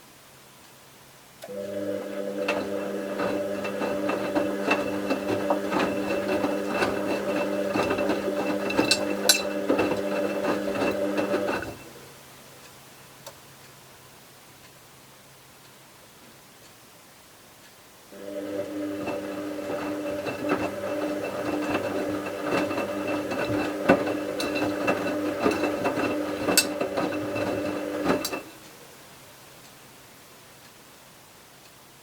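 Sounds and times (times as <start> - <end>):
faint low hum and hiss: 0.0 - 2.4, 11.7 - 18.8, 28.4 - 32.0
washing machine humming: 1.4 - 12.2, 18.1 - 29.0
washing machine clicks and knocks: 2.4 - 11.8, 18.6 - 28.5.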